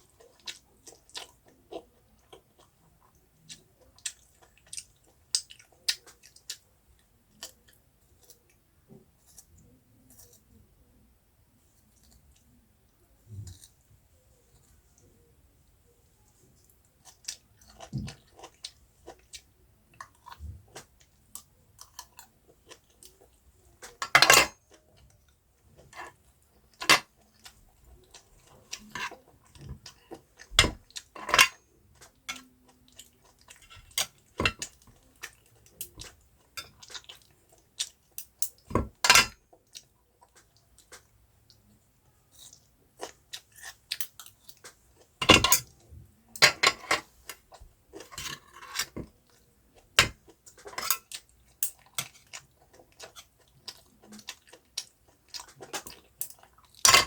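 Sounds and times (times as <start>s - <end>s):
chewing: 0.0s - 8.6s, 9.2s - 10.6s, 11.8s - 12.6s, 13.2s - 15.3s, 16.3s - 38.7s, 39.5s - 56.9s
utensils clinking against a dish: 46.4s - 47.1s, 50.0s - 52.2s.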